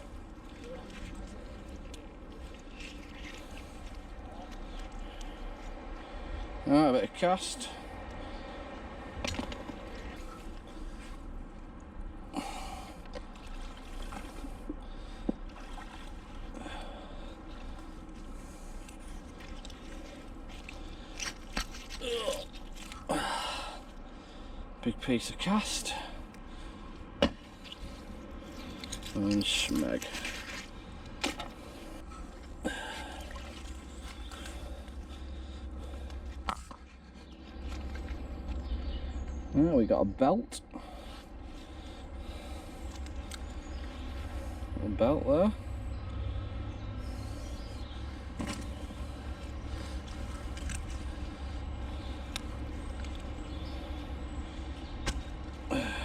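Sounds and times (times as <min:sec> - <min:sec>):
person breathing: 0:12.3 - 0:13.0, 0:16.5 - 0:19.1, 0:23.0 - 0:24.8, 0:30.7 - 0:36.4, 0:55.7 - 0:56.0
low rumble: 0:40.9 - 0:56.0.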